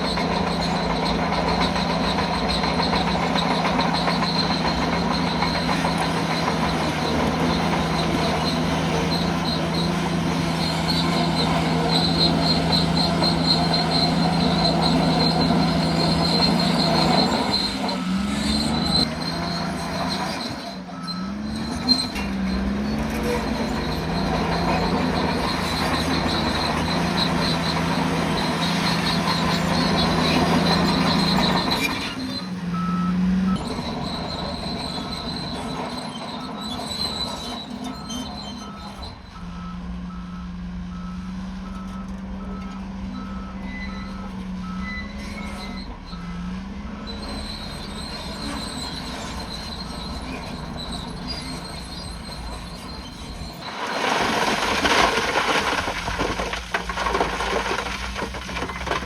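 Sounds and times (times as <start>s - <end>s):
bulldozer diesel engine: 0.0s - 59.0s
steel tracks squealing and clattering: 0.0s - 59.0s.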